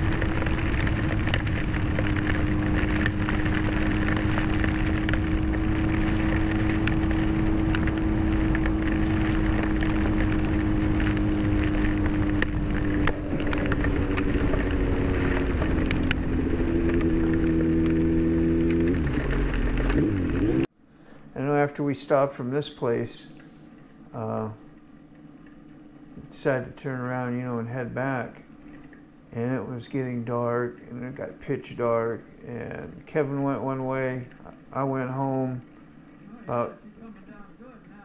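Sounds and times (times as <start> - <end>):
motorcycle engine running: 0.0 - 20.7
rain ticking on camera: 0.0 - 20.7
wind rush: 0.0 - 20.7.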